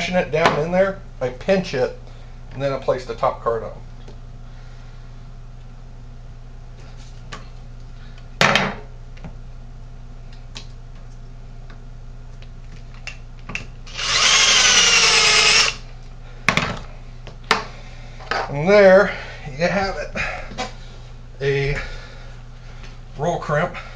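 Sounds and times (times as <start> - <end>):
power drill whining: 13.9 - 15.8.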